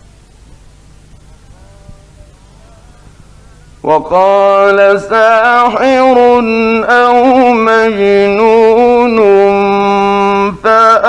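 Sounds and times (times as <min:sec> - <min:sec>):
man reciting melodically: 0:03.8 - 0:11.0.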